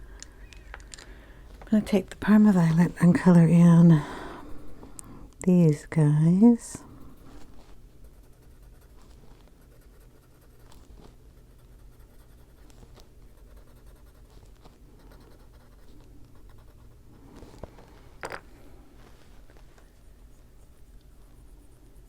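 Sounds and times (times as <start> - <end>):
pencil scratching on paper: 7.0 - 17.6.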